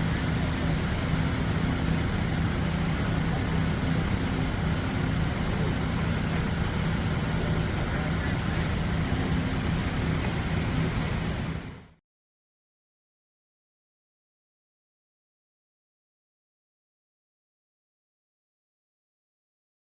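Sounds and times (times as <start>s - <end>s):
heavy vehicle engine humming: 0.0s - 12.0s
street noise: 0.0s - 12.0s.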